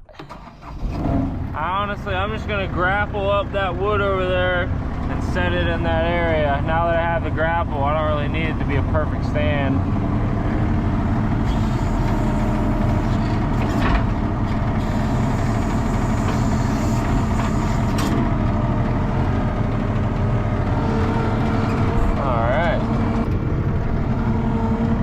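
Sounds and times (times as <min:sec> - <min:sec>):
skid steer diesel engine running: 0:00.1 - 0:25.0.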